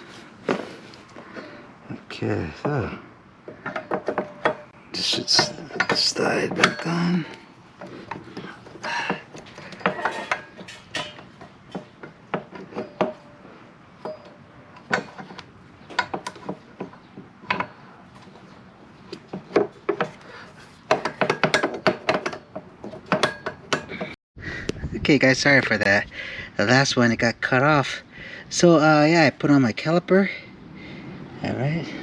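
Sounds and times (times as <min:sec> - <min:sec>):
metal tools clicking and clinking: 0:03.5 - 0:18.4, 0:20.9 - 0:24.2.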